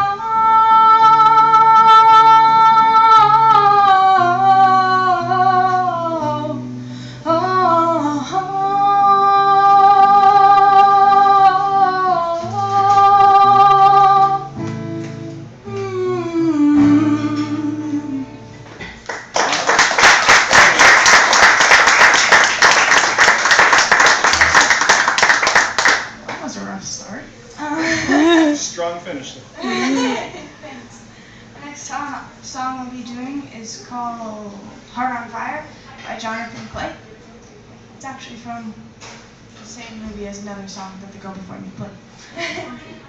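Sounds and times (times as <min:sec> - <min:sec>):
acoustic guitar: 0:00.0 - 0:28.8
person singing wordless notes: 0:15.6 - 0:18.4
audience applauding: 0:19.0 - 0:26.4.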